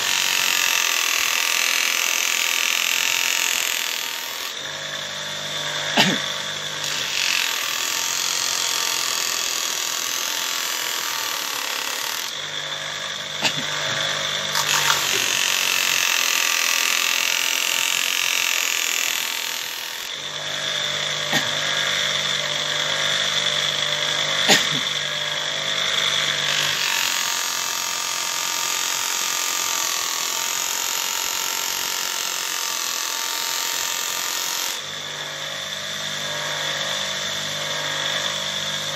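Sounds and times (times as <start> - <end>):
blade grinding on sharpening wheel: 3.0 - 27.4.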